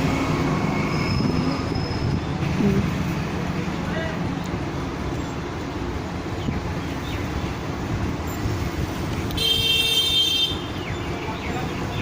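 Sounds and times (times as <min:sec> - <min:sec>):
street traffic rumble: 0:00.0 - 0:12.0
vehicle horn: 0:09.3 - 0:10.7.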